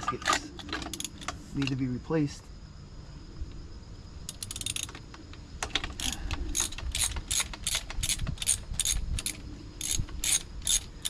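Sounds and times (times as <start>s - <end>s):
socket ratchet clicking: 0.9s - 1.4s, 4.3s - 11.0s.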